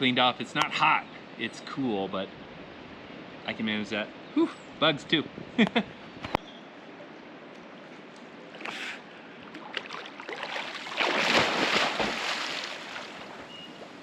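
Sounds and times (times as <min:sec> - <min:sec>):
water splashing in a pool: 0:09.4 - 0:14.0.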